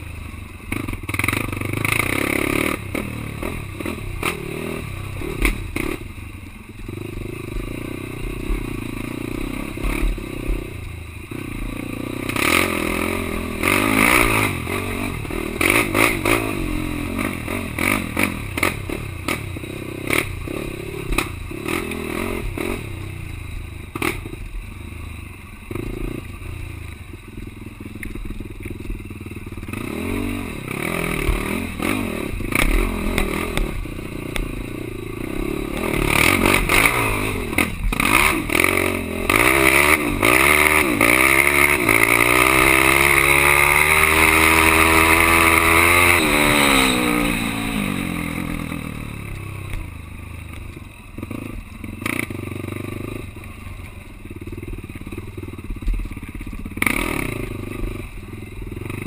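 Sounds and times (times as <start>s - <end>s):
quad engine revving: 0.7s - 6.1s, 6.9s - 23.2s, 29.6s - 49.9s, 51.2s - 53.3s, 56.7s - 59.0s.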